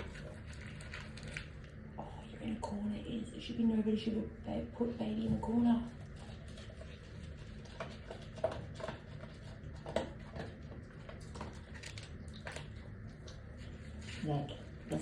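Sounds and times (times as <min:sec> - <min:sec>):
dog chewing food: 0:00.0 - 0:01.9, 0:05.9 - 0:15.0
low room hum: 0:00.0 - 0:15.0.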